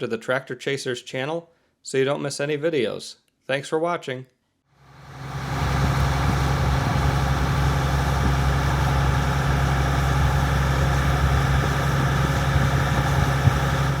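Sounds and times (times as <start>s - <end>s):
diesel engine humming: 4.9s - 14.0s.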